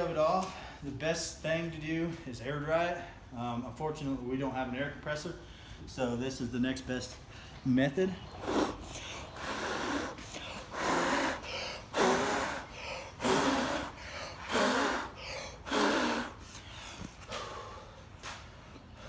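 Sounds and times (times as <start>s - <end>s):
person blowing forceful breaths: 8.3s - 18.2s.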